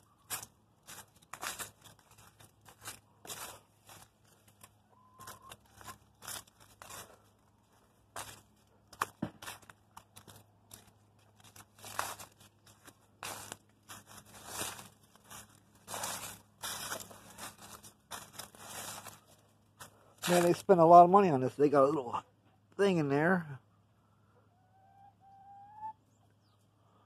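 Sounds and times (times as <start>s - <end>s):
crunching and rustling: 0.0s - 20.9s.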